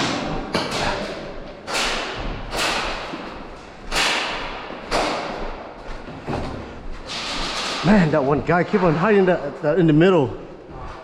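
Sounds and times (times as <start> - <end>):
airsoft gun shots echoing: 3.9 - 5.4.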